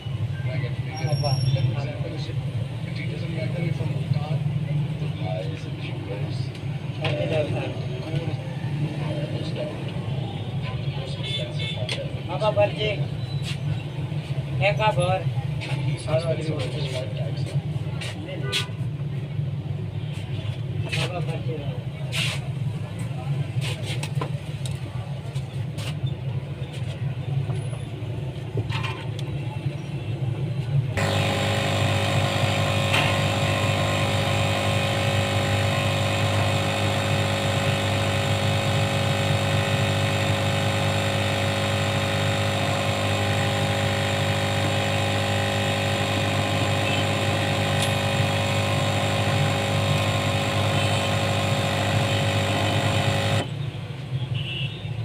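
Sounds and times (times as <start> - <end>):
street traffic rumble: 0.0 - 55.0
steady mechanical hum: 28.2 - 54.0.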